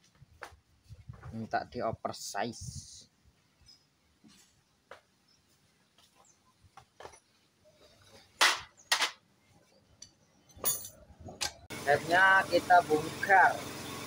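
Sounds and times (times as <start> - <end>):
tools and metal parts clicking: 10.0 - 11.6.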